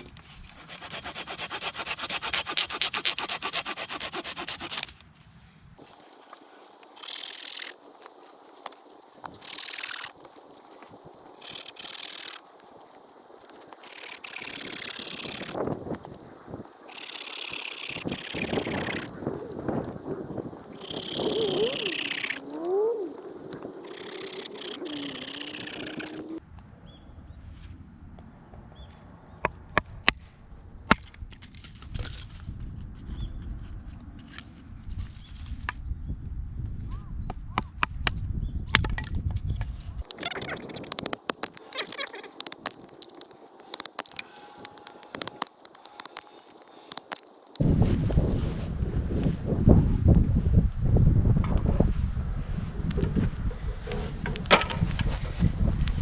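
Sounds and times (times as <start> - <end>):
saw rasping through wood: 0.6 - 4.9, 5.8 - 26.4, 40.1 - 47.6
faint bird chirps: 20.7 - 27.0, 40.1 - 47.0.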